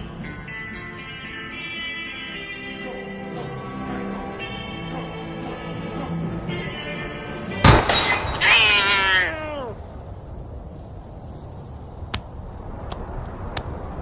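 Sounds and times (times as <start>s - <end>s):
cat yowling: 8.3s - 9.8s.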